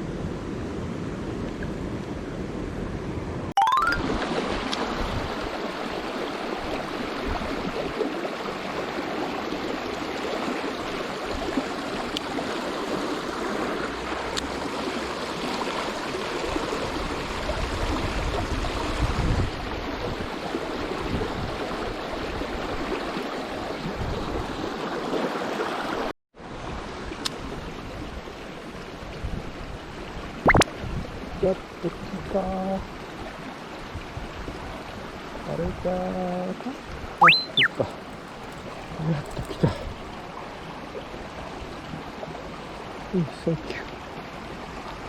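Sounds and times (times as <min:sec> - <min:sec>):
stream water rushing: 0:03.6 - 0:19.1, 0:19.8 - 0:27.6, 0:36.6 - 0:45.0.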